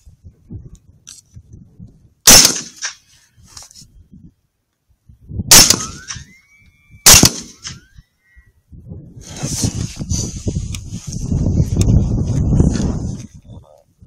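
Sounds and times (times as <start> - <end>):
rifle shots: 2.3 - 3.0, 5.5 - 6.3, 7.0 - 7.8.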